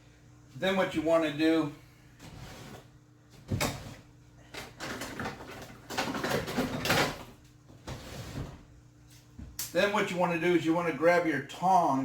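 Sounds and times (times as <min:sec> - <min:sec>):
rustling and scraping: 0:02.2 - 0:09.4.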